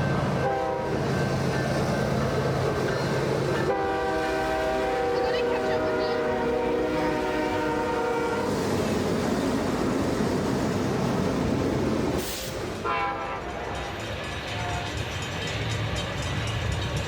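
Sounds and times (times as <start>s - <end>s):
model train horn: 0.4s - 1.0s, 3.6s - 8.5s, 12.8s - 13.9s.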